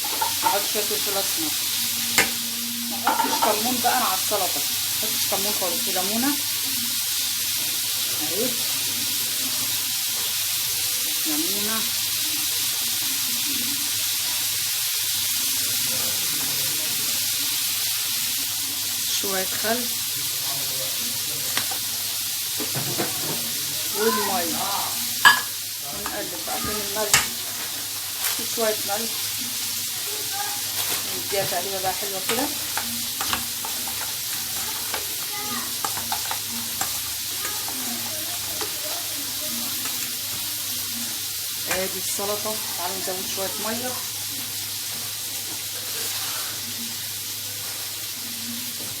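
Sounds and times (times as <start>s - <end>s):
meat sizzling on a grill: 0.0s - 49.0s
spoon knocking bowl: 25.2s - 25.5s
spoon stirring salad: 30.7s - 40.5s.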